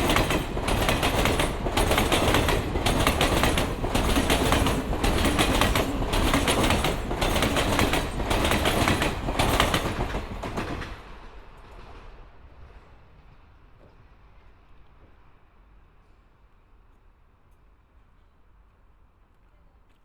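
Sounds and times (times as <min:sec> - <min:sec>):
wheels clattering over rail joints: 0:00.0 - 0:11.0
train rushing rumble: 0:00.0 - 0:13.4.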